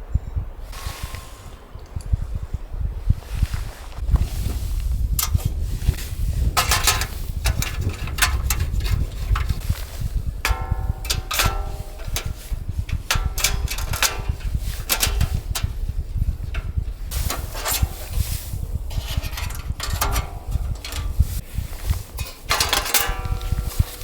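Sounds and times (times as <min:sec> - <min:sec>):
wind buffeting microphone: 0:00.0 - 0:24.0
clicks and rattles of handling: 0:05.2 - 0:05.9, 0:06.5 - 0:24.0.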